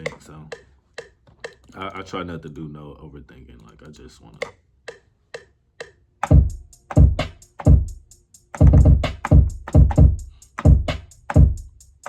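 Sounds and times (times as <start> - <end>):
hi-hat ticks: 0.0 - 1.6, 4.4 - 12.0
booming kick drums: 6.3 - 8.0, 8.6 - 11.7.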